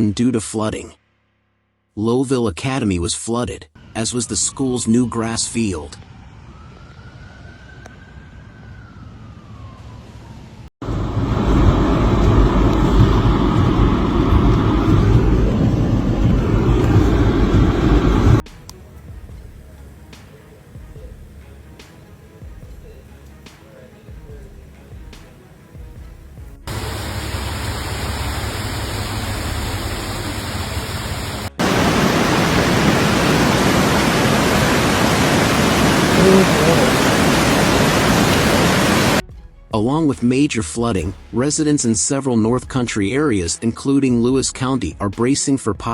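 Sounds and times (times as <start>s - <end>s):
distant siren wailing: 5.9s - 18.5s, 26.7s - 39.2s
low rumble: 10.8s - 18.5s
loud steady rushing noise: 10.8s - 21.0s, 26.7s - 39.2s.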